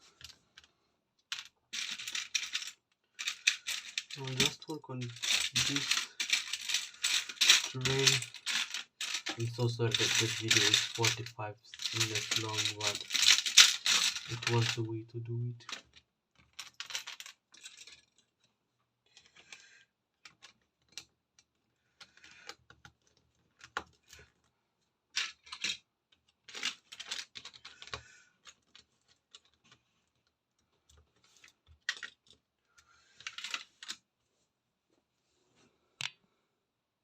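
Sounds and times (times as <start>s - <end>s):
plastic lego pieces clattering: 1.3s - 18.4s, 19.1s - 24.3s, 25.1s - 29.8s, 30.9s - 32.4s, 33.1s - 34.0s.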